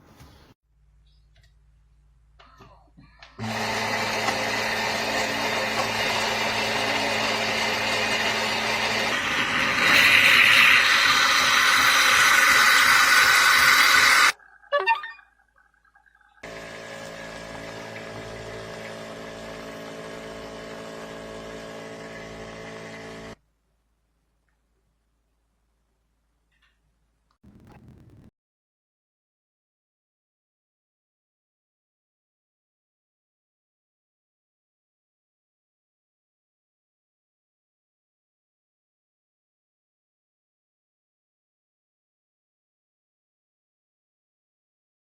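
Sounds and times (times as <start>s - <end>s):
espresso machine pump hum: 3.4s - 14.3s, 16.4s - 23.4s
espresso machine hiss: 8.6s - 14.3s.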